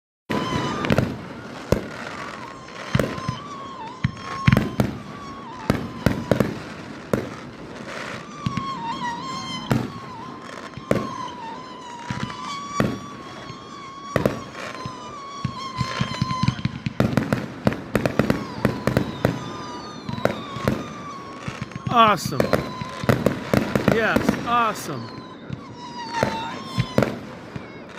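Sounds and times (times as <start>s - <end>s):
firework bangs: 0.3s - 27.9s
steady wavering tone: 0.5s - 21.9s.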